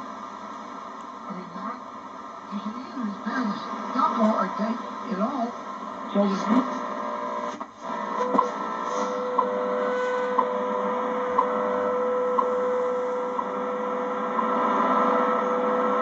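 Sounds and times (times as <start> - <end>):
radio band noise and hiss: 0.0 - 16.0
steady radio tone: 0.0 - 16.0
time signal ticks: 12.3 - 12.6.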